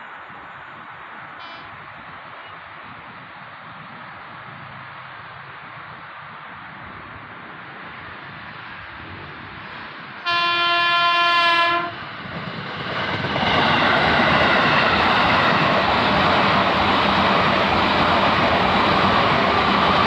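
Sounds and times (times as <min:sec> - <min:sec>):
train wheels rumbling on rails: 0:05.8 - 0:20.0
train horn blast: 0:10.2 - 0:12.0.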